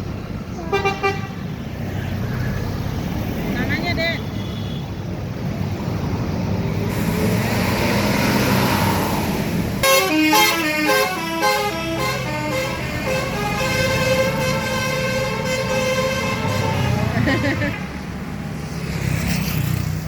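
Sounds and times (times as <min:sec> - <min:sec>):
bus engine running: 0:00.0 - 0:03.9, 0:05.0 - 0:19.0
multi-tone musical bus horn: 0:00.5 - 0:01.5, 0:09.8 - 0:17.6.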